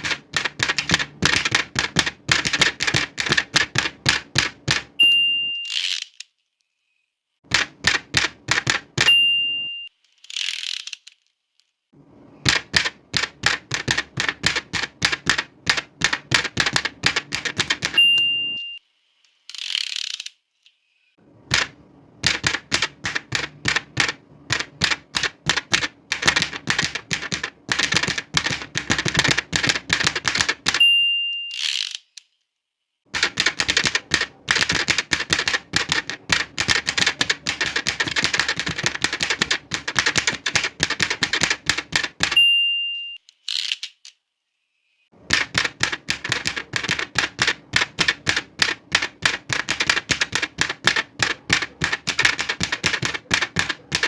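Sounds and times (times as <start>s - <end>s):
typewriter carriage return: 0.0s - 5.0s, 7.5s - 11.1s, 12.4s - 18.8s, 21.4s - 30.9s, 33.2s - 42.5s, 45.2s - 54.0s
typewriter key strikes: 0.0s - 5.0s, 7.5s - 9.7s, 12.4s - 18.6s, 21.5s - 30.8s, 33.2s - 42.4s, 45.2s - 54.0s
typewriter margin bell ding: 5.0s - 5.8s, 9.0s - 9.9s, 17.2s - 18.8s, 30.6s - 31.6s, 42.2s - 43.2s.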